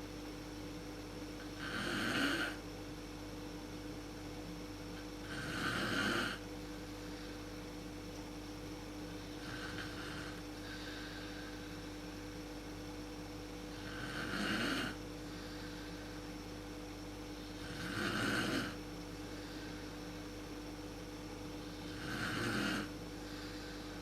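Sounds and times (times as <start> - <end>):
background hum: 0.0 - 24.0
woman snoring: 1.6 - 2.6, 5.2 - 6.4, 9.4 - 11.3, 13.7 - 15.0, 17.5 - 18.8, 21.8 - 24.0.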